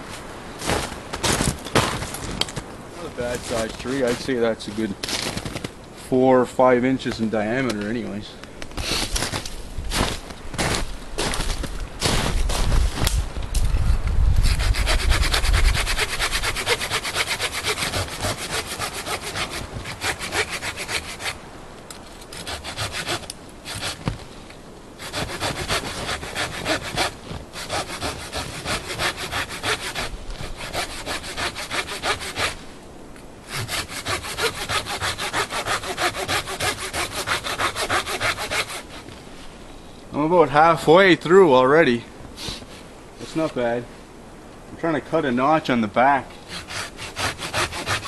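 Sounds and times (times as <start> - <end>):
pruning saw cutting wood: 14.4 - 21.4, 22.3 - 24.2, 25.0 - 32.6, 33.5 - 39.1, 46.4 - 48.0.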